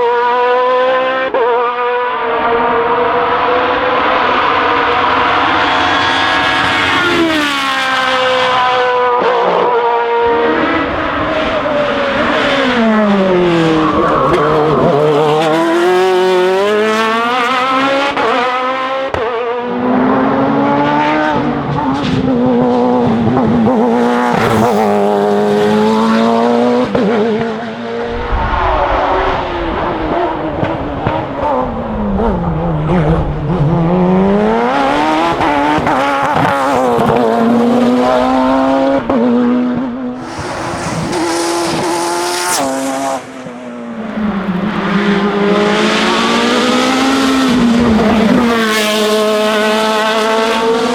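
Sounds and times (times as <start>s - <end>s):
race car engine revving: 0.0s - 50.9s.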